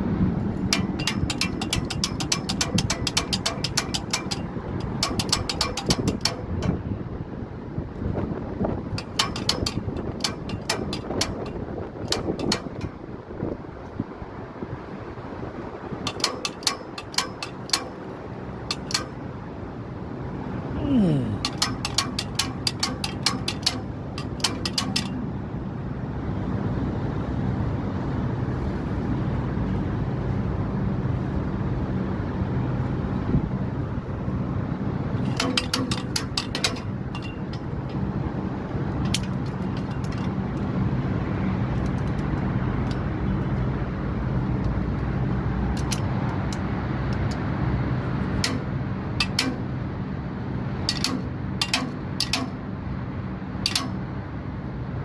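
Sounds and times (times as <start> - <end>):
sharp metallic clicks and taps: 0.5 - 6.9, 8.9 - 13.0, 16.0 - 19.2, 21.4 - 25.2, 35.2 - 38.1, 38.9 - 40.7, 41.7 - 43.6, 45.7 - 47.5, 48.3 - 49.7, 50.8 - 52.6, 53.6 - 54.0.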